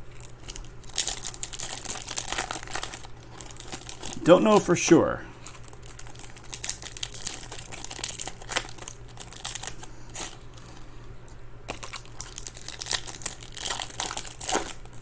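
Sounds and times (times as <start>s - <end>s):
trading cards rustling and clicking: 0.2s - 10.8s.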